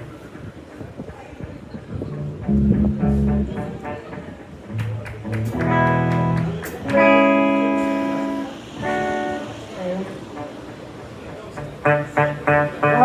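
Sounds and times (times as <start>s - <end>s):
low plucked guitar notes: 2.0s - 10.5s, 11.6s - 13.0s
guitar strumming chords: 2.1s - 10.9s, 11.5s - 13.0s.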